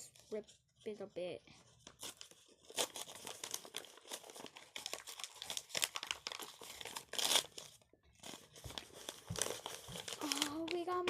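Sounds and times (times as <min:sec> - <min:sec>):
wrapper being ripped and crinkled: 0:01.8 - 0:08.5, 0:09.5 - 0:10.9.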